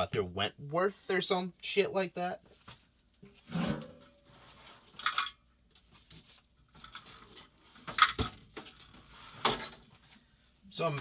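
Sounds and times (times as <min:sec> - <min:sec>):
metal tools clinking on workbench: 0:05.0 - 0:05.4.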